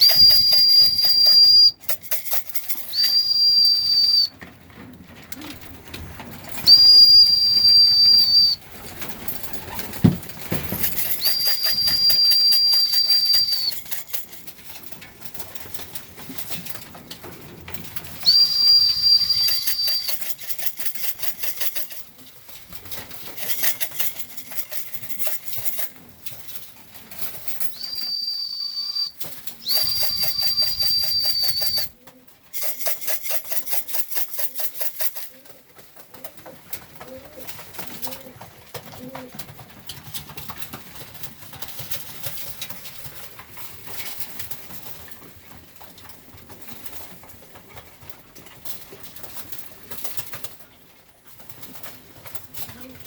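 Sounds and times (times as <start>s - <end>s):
high steady whistle: 0.0s - 1.8s, 2.9s - 4.3s, 6.7s - 8.6s, 11.2s - 13.9s, 18.2s - 20.3s, 27.7s - 31.9s
fast rattling or fluttering: 0.0s - 36.4s
pigeons cooing softly: 4.6s - 10.0s, 33.6s - 40.0s.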